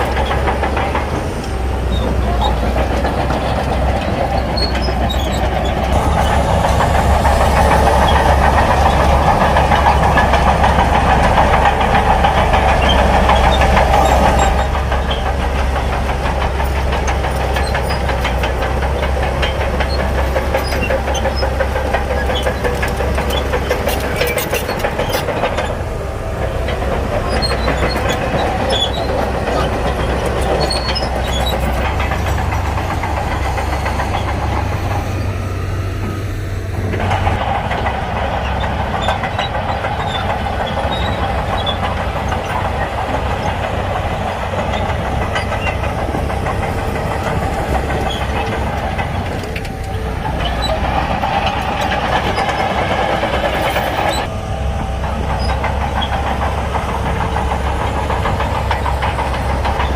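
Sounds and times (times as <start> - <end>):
bulldozer diesel engine running: 0.0 - 59.9
steel tracks clanking and squealing: 0.0 - 59.9.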